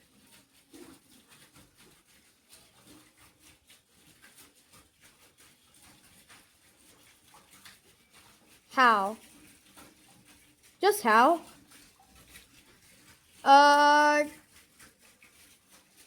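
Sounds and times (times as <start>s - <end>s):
faint soft ticks and rustles: 0.0s - 16.0s.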